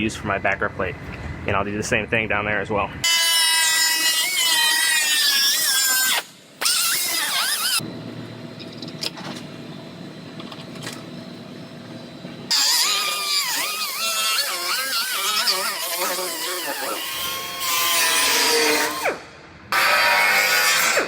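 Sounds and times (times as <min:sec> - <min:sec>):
cut-off tool whining through metal: 0:03.0 - 0:07.8, 0:12.5 - 0:21.0.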